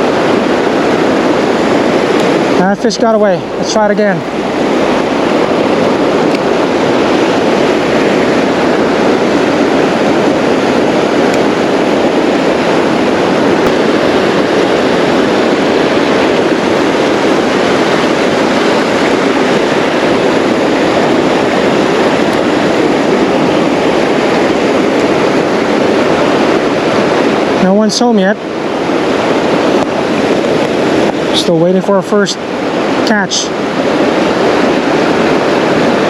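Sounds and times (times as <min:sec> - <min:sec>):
creek water rushing: 0:00.0 - 0:36.0.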